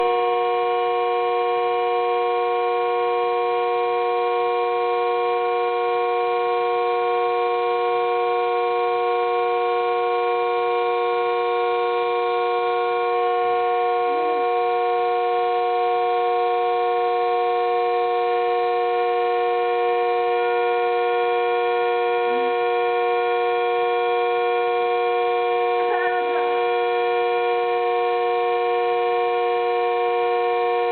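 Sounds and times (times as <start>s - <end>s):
teapot whistling: 25.8s - 26.8s.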